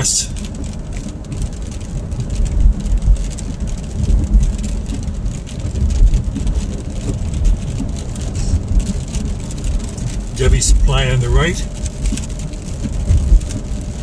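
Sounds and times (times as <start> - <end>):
car engine and road rumble: 0.0 - 14.0
raindrops tapping on car: 0.0 - 14.0.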